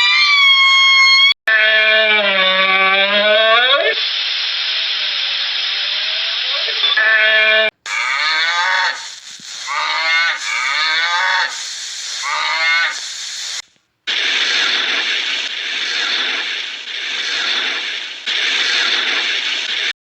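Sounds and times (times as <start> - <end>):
steady hissing noise: 3.9 - 7.0, 7.7 - 20.0
farm animal calling: 7.0 - 13.6.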